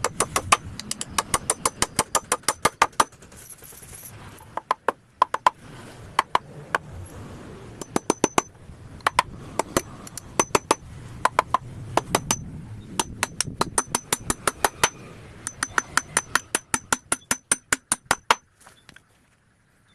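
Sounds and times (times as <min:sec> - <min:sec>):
hammer tapping wood: 0:04.5 - 0:05.6, 0:06.2 - 0:06.9, 0:07.8 - 0:12.4, 0:13.0 - 0:18.4.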